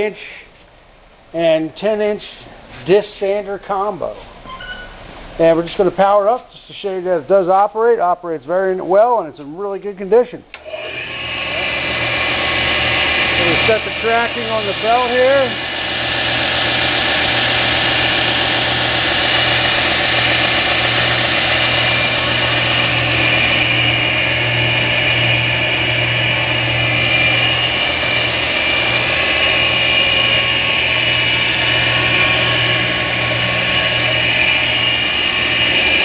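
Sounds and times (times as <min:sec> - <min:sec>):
sander motor humming and whirring: 0:10.6 - 0:36.0.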